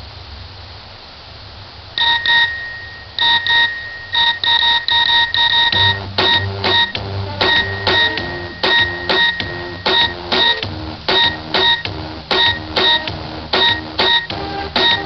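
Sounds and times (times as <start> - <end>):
electronic ringtone beeps: 2.0 - 15.0
dance tune with bass line: 5.7 - 15.0.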